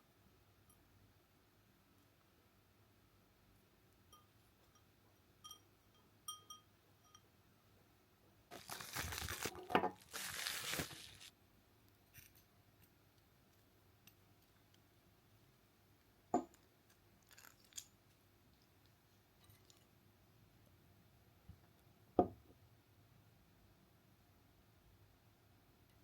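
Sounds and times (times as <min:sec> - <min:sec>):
wrapping material rustling and tearing: 0:08.5 - 0:11.3, 0:17.2 - 0:17.8
hard objects clinking: 0:17.2 - 0:17.9.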